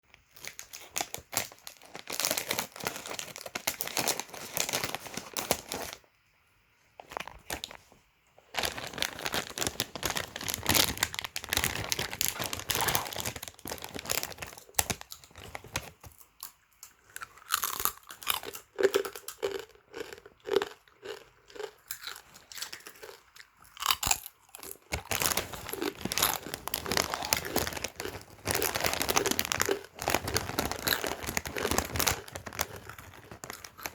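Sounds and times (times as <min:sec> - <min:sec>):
pork crackling crunching: 0:08.6 - 0:33.9.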